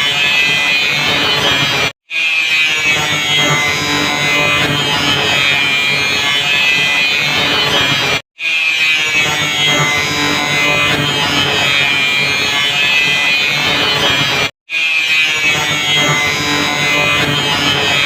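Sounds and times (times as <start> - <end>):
angle grinder whining and grinding: 0.0 - 18.0.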